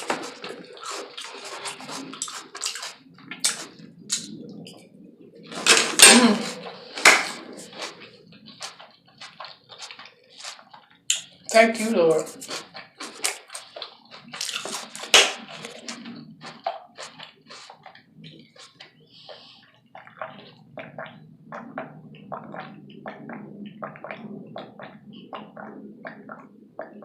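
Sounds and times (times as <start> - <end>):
wet chewing and mouth smacking: 0.0 - 11.6, 12.3 - 27.0.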